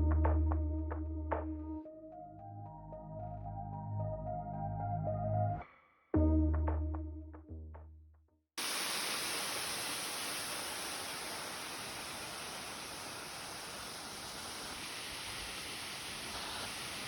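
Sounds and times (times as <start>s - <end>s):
waterfall rushing: 8.6s - 17.0s.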